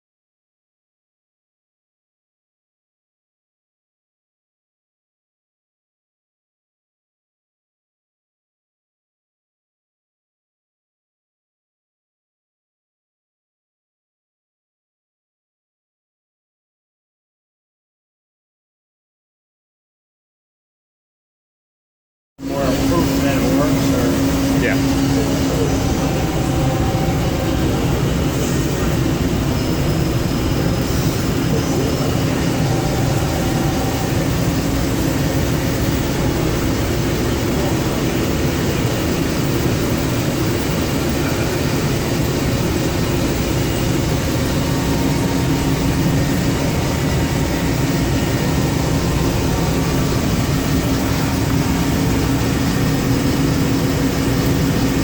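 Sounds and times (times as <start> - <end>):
lathe machine humming: 22.4 - 55.0.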